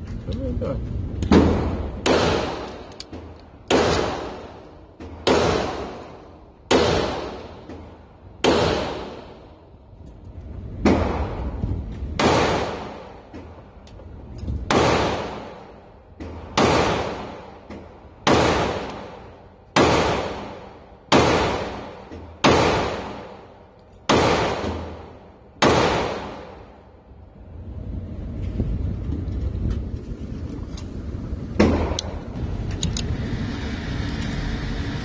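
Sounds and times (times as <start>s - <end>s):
handgun shots echoing: 1.3s - 6.1s, 24.0s - 26.6s.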